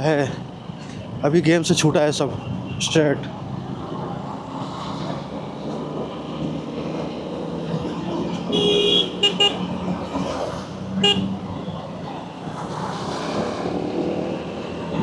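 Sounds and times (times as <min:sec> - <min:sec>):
vehicle horns honking: 0:08.5 - 0:09.8, 0:11.0 - 0:11.4.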